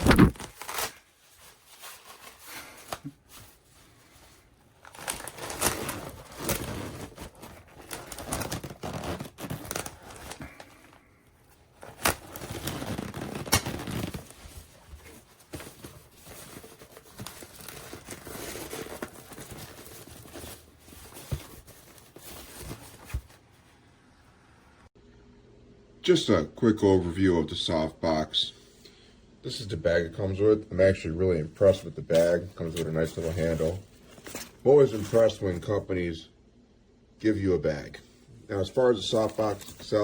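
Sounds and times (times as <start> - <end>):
packaging crinkling and rustling: 0.0 - 23.5, 39.1 - 40.0.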